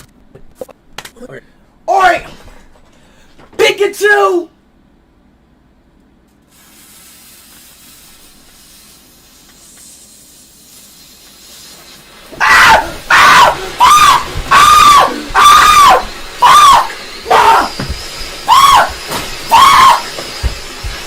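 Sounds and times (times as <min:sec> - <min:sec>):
firework hissing: 0:06.5 - 0:21.0
firework squealing: 0:10.8 - 0:21.0.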